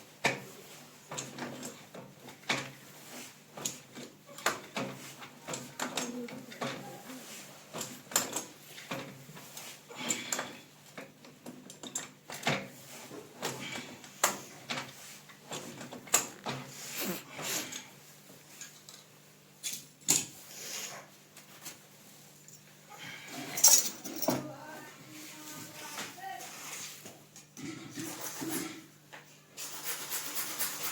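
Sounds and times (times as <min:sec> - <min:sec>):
clicks and knocks of pipe fittings: 0:10.0 - 0:12.7.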